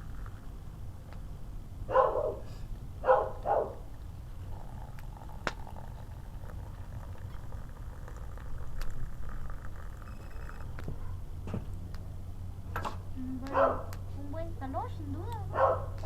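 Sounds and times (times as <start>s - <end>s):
campfire crackling: 0.0s - 1.3s, 3.9s - 10.9s
low steady rumble: 0.0s - 16.0s
dog barking: 1.9s - 3.8s, 13.5s - 13.9s, 15.5s - 16.0s.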